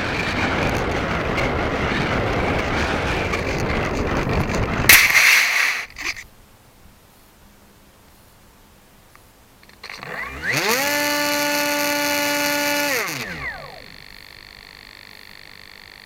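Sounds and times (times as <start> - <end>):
quiet high whine: 0.0 - 16.0
electric motor whine: 9.8 - 16.0.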